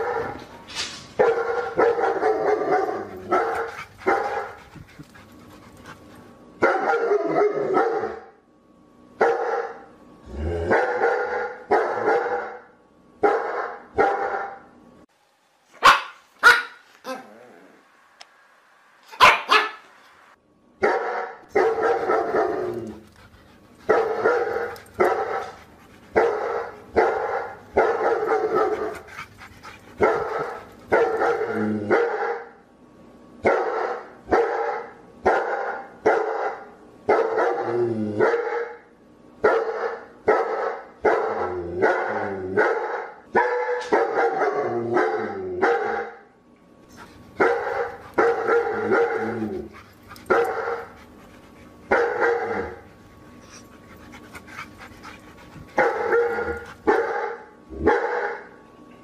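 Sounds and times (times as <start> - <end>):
dog barking: 1.2 - 4.5, 6.6 - 8.3, 9.2 - 9.8, 10.7 - 14.6, 15.8 - 17.3, 19.1 - 19.9, 20.8 - 22.8, 23.9 - 25.6, 26.2 - 29.0, 30.0 - 32.5, 33.4 - 38.8, 39.4 - 46.2, 47.4 - 49.5, 50.3 - 50.9, 51.9 - 52.8, 55.8 - 58.5.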